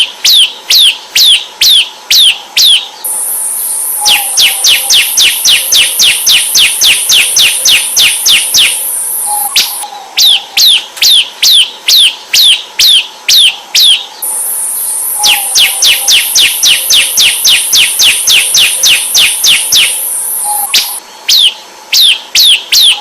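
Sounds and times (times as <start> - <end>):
high buzzy trill: 3.0 - 9.8, 14.2 - 21.0
bird song with sharp descending notes: 3.9 - 10.8.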